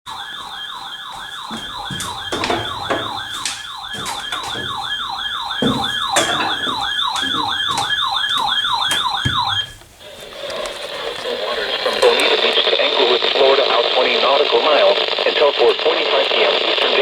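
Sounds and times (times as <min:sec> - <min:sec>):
warbling electronic alert siren: 0:00.0 - 0:12.5
radio static crackles: 0:09.5 - 0:17.0.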